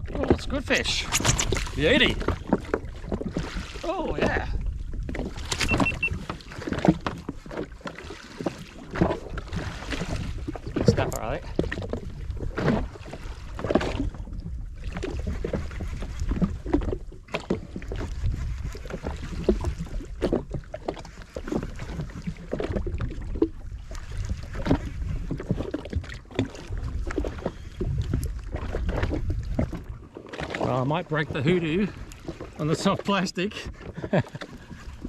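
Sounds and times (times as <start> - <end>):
wind buffeting microphone: 0.0 - 7.0, 22.2 - 30.1
small waves slapping against hull: 0.0 - 35.0.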